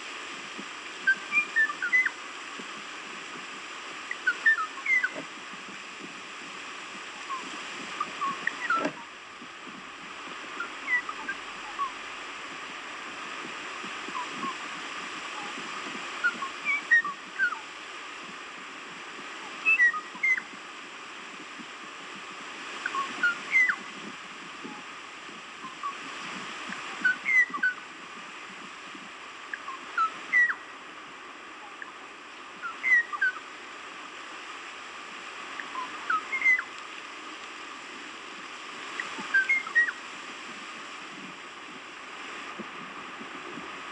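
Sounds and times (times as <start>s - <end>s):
steady background hiss: 0.0s - 43.9s
bird whistling notes: 1.1s - 2.2s, 4.2s - 5.2s, 7.2s - 9.1s, 10.6s - 12.0s, 16.2s - 17.6s, 19.6s - 20.5s, 22.8s - 23.8s, 27.0s - 27.8s, 29.6s - 30.6s, 32.6s - 33.4s, 35.7s - 36.7s, 39.3s - 40.0s.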